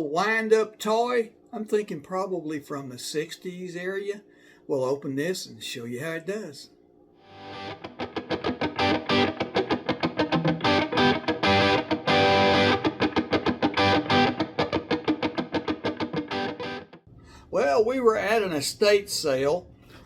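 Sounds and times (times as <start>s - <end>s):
distorted electric guitar music: 7.2s - 17.0s.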